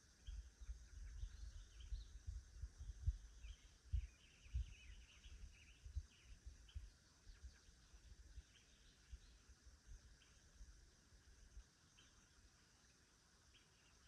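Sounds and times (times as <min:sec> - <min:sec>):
small birds chirping: 0:00.0 - 0:10.9, 0:11.5 - 0:14.0
faint low rumble: 0:00.0 - 0:14.0.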